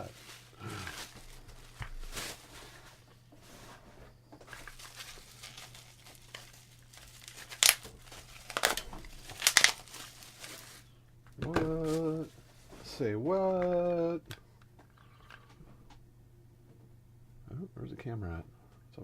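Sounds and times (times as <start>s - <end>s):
packaging crinkling and tearing: 0.0s - 3.1s, 4.4s - 10.9s, 11.7s - 12.3s.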